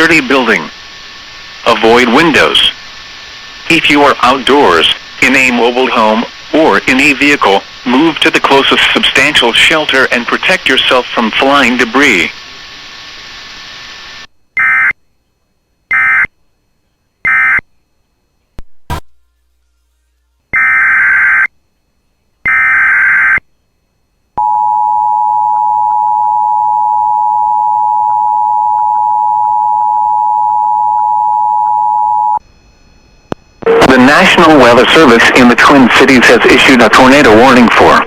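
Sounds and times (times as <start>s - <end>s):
two-tone attention signal: 33.6s - 34.2s.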